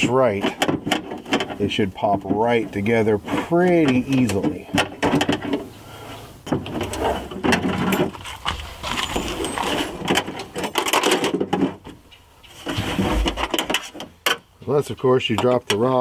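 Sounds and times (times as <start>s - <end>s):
car door latch rods rattling: 3.7s - 5.7s.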